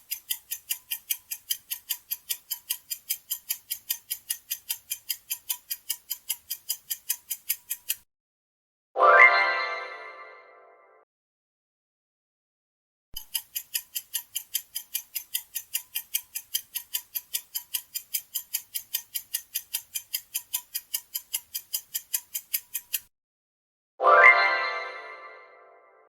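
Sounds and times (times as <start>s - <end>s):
clock ticking: 0.0s - 8.0s, 13.2s - 23.1s.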